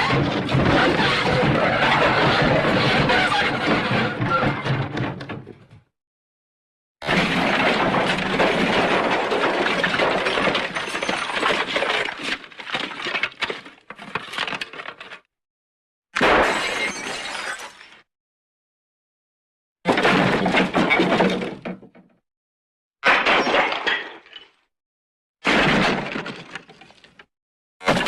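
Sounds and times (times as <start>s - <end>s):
crash of breaking debris: 0.0s - 5.4s, 7.0s - 13.6s, 19.9s - 21.7s, 23.0s - 24.6s, 25.4s - 27.2s
scattered cracks and clinks: 7.3s - 15.3s.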